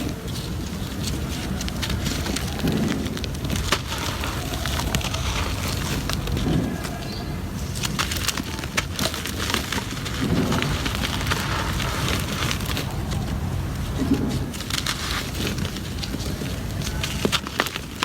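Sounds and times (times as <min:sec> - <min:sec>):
cement crumbling and crackling: 0:00.0 - 0:18.0.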